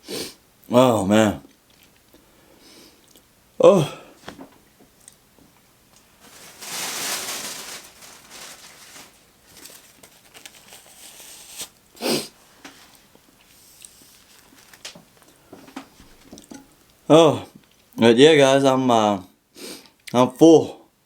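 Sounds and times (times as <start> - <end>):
short vocal sound: 3.6 - 4.1
wrapper rustling and crinkling: 6.0 - 11.8, 12.8 - 16.6.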